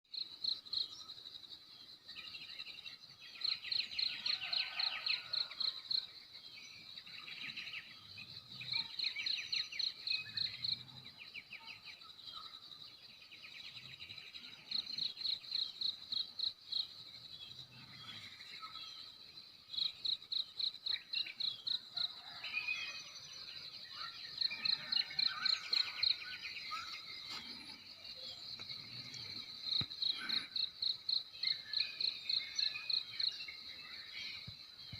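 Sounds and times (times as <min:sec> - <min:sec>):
crickets trilling: 0:00.1 - 0:34.9
wild bird calls: 0:22.2 - 0:33.1.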